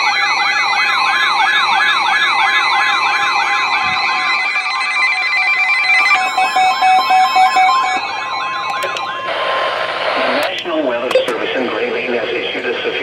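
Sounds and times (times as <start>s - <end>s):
electronic siren wail: 0.0s - 10.6s
pulsing beep: 5.6s - 9.3s
steady alert tones: 5.8s - 11.6s.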